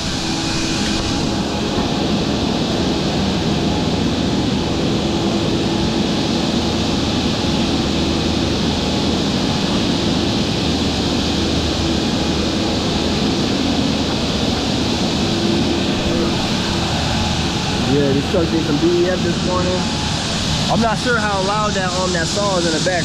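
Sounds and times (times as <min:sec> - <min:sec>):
concrete saw cutting: 0:15.3 - 0:23.0.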